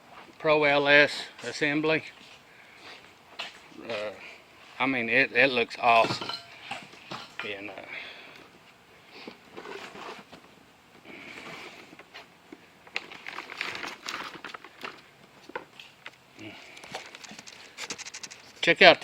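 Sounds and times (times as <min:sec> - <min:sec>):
brief rustles: 0:16.4 - 0:18.6.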